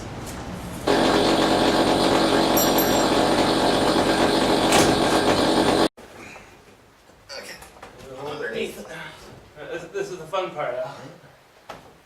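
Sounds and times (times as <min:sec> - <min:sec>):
power tool running: 0:00.8 - 0:05.9.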